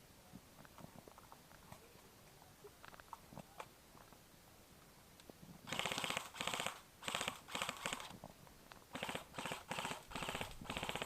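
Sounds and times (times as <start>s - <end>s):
airsoft gun firing bursts: 5.7s - 8.1s, 8.9s - 11.0s.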